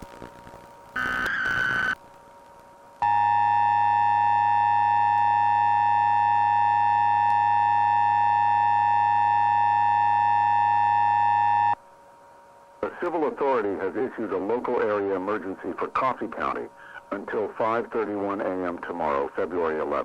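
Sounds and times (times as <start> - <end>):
buzzing data tone: 0.0 - 2.0, 3.0 - 11.8.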